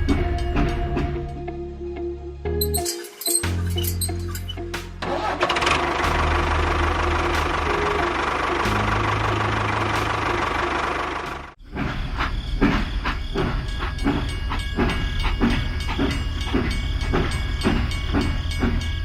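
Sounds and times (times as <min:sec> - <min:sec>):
small machine droning: 0:05.8 - 0:19.0
rhythmic chugging: 0:12.6 - 0:19.0.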